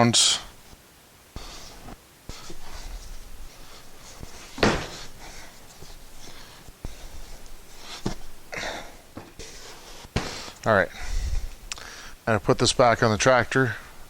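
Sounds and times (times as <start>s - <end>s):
tractor wheel knocks and thumps: 4.5s - 5.1s.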